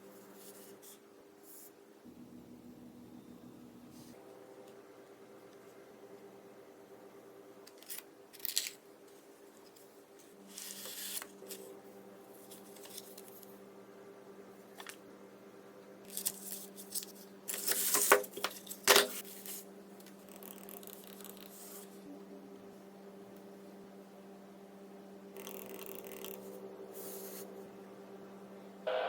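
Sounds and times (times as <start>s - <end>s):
faint steady hum: 0.0s - 29.0s
rustling of unboxing materials: 12.4s - 13.4s, 16.1s - 19.7s.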